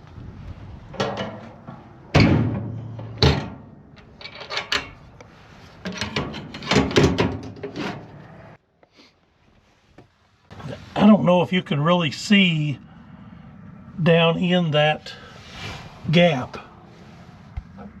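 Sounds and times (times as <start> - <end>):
metal clanks and rattles: 0.9 - 5.1, 5.8 - 8.2
metal feeder bangs: 2.1 - 3.8.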